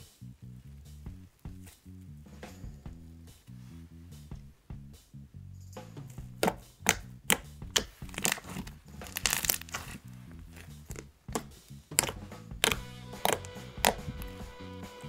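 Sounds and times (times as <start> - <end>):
soft background music: 5.7 - 15.0
slime crackling and popping: 6.4 - 14.3.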